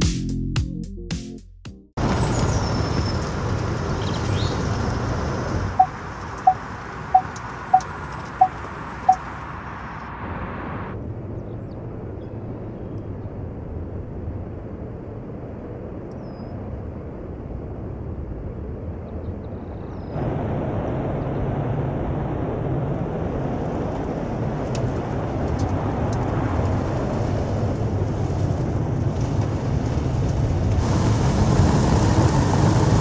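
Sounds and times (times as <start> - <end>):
short beeps: 5.8 - 9.2.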